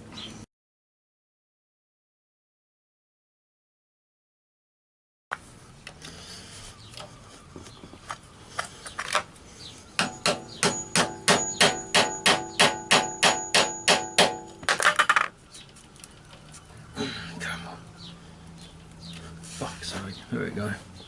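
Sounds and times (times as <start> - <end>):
hammer tapping on metal: 10.0 - 14.6.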